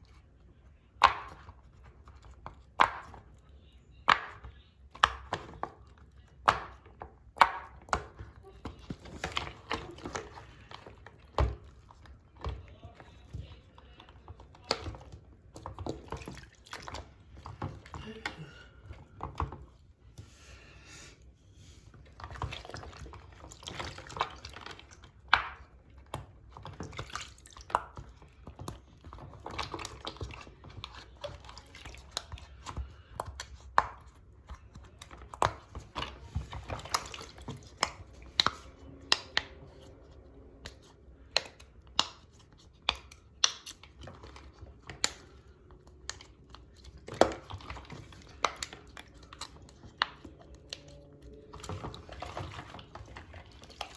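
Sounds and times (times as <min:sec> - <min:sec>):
water sloshing and dripping: 0:05.0 - 0:20.7, 0:21.6 - 0:53.9
plastic toys clicking and popping: 0:40.5 - 0:53.9.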